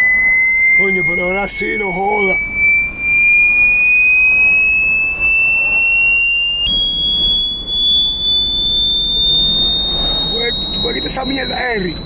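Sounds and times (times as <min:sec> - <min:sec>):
shrill electronic tone: 0:00.0 - 0:12.0
road rumble inside car: 0:06.6 - 0:12.0.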